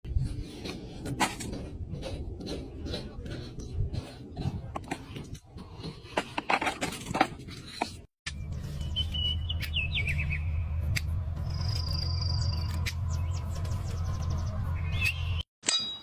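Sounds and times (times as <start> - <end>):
birds chirping: 8.3 - 15.4.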